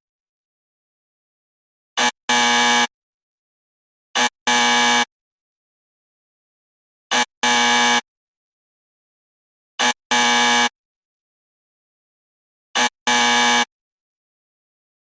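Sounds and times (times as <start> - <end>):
wrong-answer buzzer: 2.0 - 3.0, 4.2 - 5.1, 7.1 - 8.1, 9.8 - 10.8, 12.8 - 13.8.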